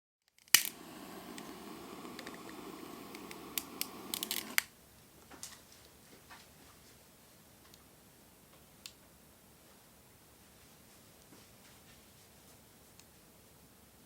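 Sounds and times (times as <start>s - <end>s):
wood fire crackling: 0.3s - 4.7s
sharp pops: 0.5s - 4.7s.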